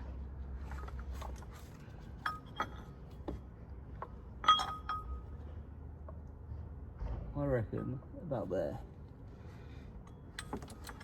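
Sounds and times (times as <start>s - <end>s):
metal bolt clinking on pulley: 4.4s - 5.2s, 10.1s - 11.0s.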